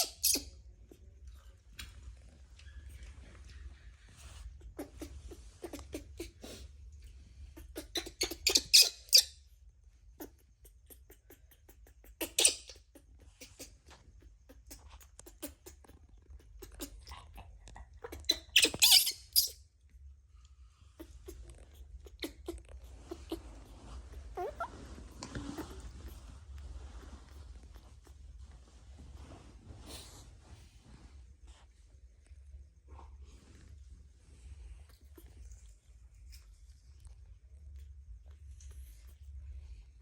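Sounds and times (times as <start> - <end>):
baby monkey squealing: 0.0 - 0.6, 7.6 - 9.4, 10.2 - 17.1, 18.0 - 19.6, 21.0 - 26.2.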